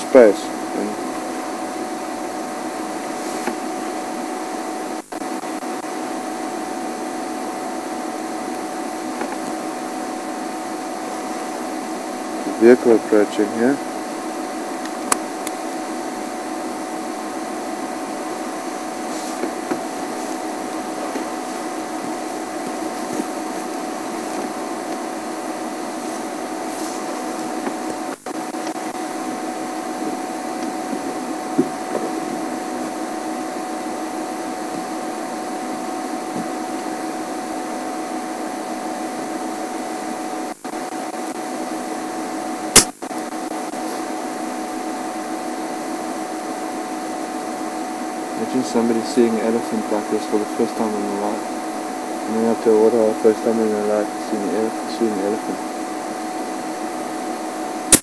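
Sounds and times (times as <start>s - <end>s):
hissing hum with whine: 0.0s - 58.0s
sharp click: 42.8s - 43.0s.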